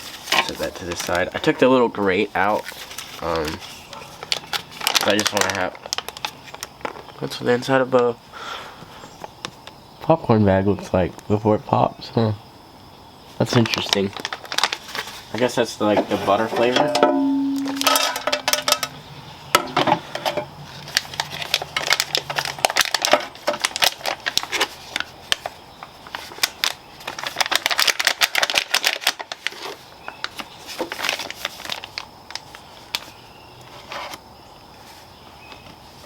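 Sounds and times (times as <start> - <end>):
popcorn kernels rattling: 16.3 - 18.9, 20.9 - 25.0.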